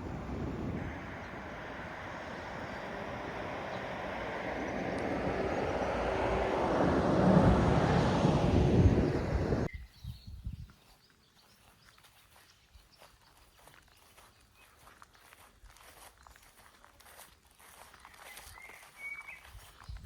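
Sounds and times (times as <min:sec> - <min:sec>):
steady rushing noise: 0:00.0 - 0:09.7.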